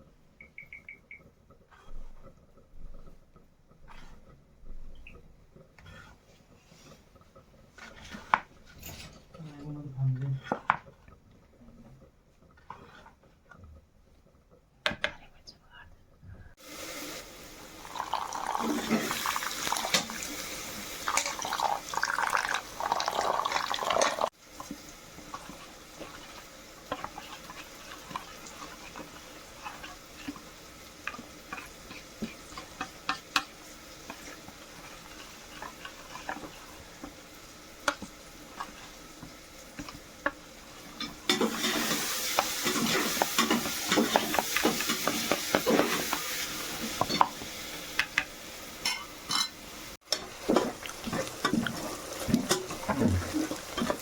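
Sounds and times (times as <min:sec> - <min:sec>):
food sizzling: 0:16.6 - 0:54.0
spoon scraping a pot: 0:23.0 - 0:47.4.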